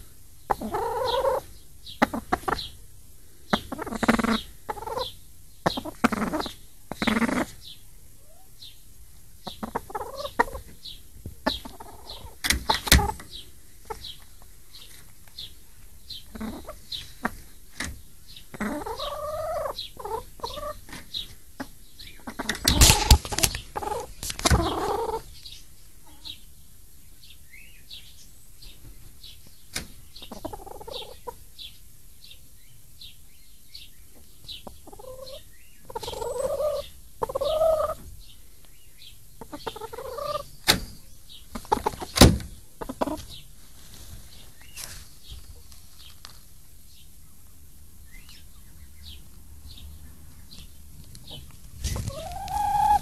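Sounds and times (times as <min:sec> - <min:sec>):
hen calls: 0:00.0 - 0:02.8, 0:03.5 - 0:07.6, 0:18.5 - 0:20.8, 0:22.1 - 0:25.3, 0:34.8 - 0:38.0, 0:51.3 - 0:53.0
chicks chirping: 0:00.5 - 0:02.8, 0:03.5 - 0:08.8, 0:09.4 - 0:17.6, 0:18.2 - 0:26.5, 0:27.2 - 0:32.4, 0:33.8 - 0:38.4, 0:39.0 - 0:43.5, 0:47.2 - 0:53.0.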